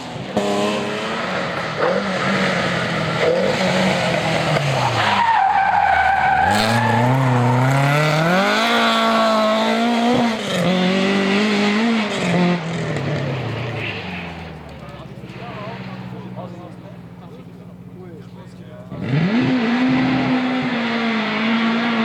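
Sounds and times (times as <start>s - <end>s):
rally car engine revving: 0.0s - 22.0s
tyres squealing: 1.0s - 9.4s.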